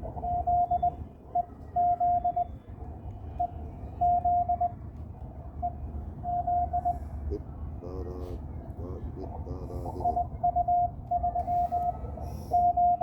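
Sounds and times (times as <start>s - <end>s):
morse code beeps: 5.6s - 7.0s, 12.5s - 13.0s.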